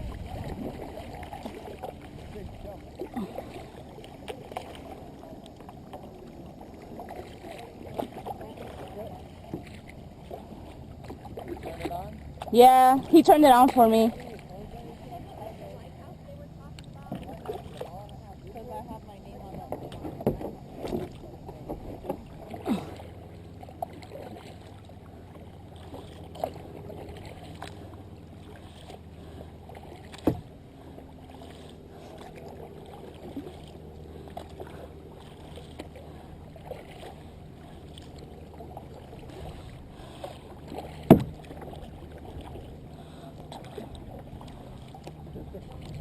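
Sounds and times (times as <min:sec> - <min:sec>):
muffled paddling water: 0:00.0 - 0:46.0
paddle knocking on hull: 0:19.4 - 0:22.6, 0:29.7 - 0:30.6, 0:35.2 - 0:46.0.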